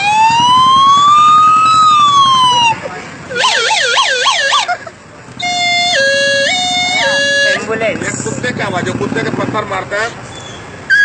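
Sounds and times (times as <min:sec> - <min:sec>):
siren imitated on an instrument: 0:00.0 - 0:04.7, 0:05.4 - 0:07.6.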